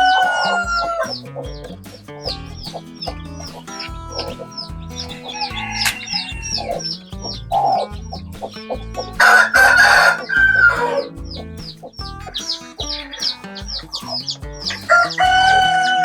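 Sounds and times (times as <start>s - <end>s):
rooster crowing: 0.0s - 1.1s, 5.1s - 7.0s, 9.2s - 11.1s, 14.9s - 16.0s
background music with beat: 0.0s - 16.0s
hens clucking: 0.0s - 16.0s.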